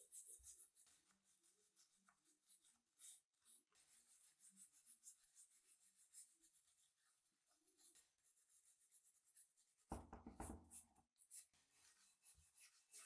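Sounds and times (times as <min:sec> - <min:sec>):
tool knock: 0:09.9 - 0:10.8.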